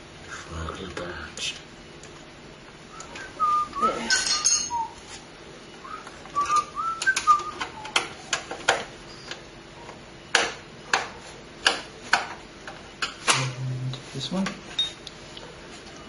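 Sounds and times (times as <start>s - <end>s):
person whistling: 2.9s - 5.0s, 5.8s - 8.0s.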